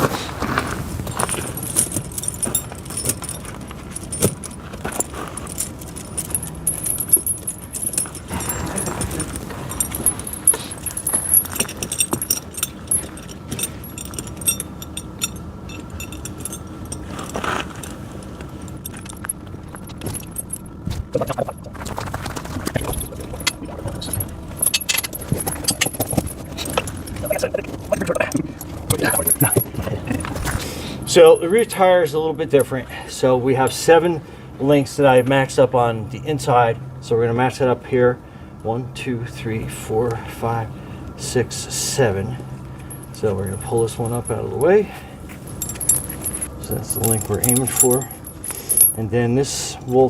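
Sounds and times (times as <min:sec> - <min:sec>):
chain links clinking: 0:01.0 - 0:31.8, 0:42.4 - 0:50.0.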